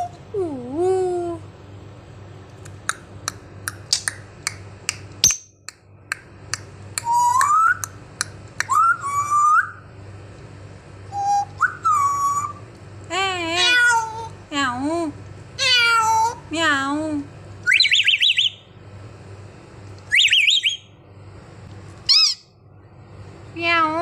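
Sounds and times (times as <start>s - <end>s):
parrot clicking: 2.6s - 8.8s
parrot whistling: 7.0s - 7.9s, 8.6s - 9.8s, 11.1s - 12.6s, 17.6s - 18.7s, 20.1s - 20.9s, 22.1s - 22.5s.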